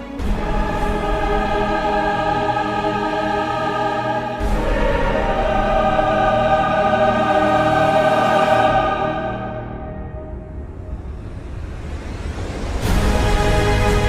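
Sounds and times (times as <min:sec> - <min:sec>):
choir singing held chords: 0:00.0 - 0:12.1, 0:12.8 - 0:14.0
orchestral music: 0:00.0 - 0:14.0.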